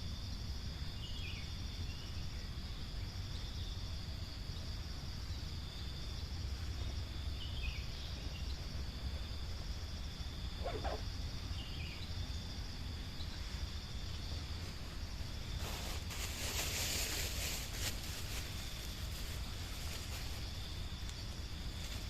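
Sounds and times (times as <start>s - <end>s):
insects trilling: 0.0s - 22.0s
faint bird chirps: 10.6s - 12.1s.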